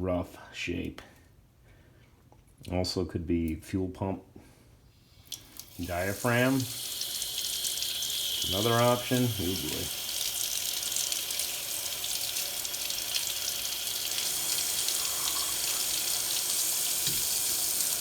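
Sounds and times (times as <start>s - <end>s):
tap water running into sink: 5.3s - 18.0s.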